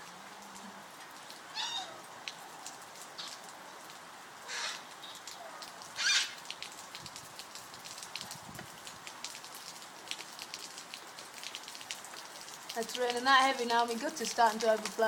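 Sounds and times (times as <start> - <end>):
heavy rain falling: 0.0 - 15.0
harsh parrot calls: 1.6 - 2.0, 4.5 - 4.9, 6.0 - 6.4.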